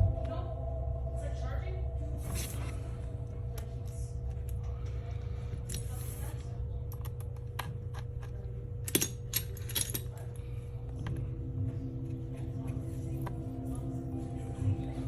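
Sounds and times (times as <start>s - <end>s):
steady low hum: 0.0s - 15.0s
small metal parts clicking: 6.9s - 10.4s.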